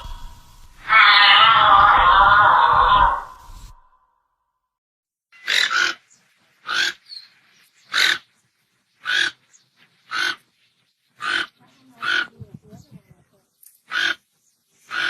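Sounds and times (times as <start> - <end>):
animal giving harsh calls: 0.0 - 3.9, 5.4 - 6.0, 9.0 - 9.4, 10.1 - 10.4, 11.2 - 12.3, 13.9 - 14.2.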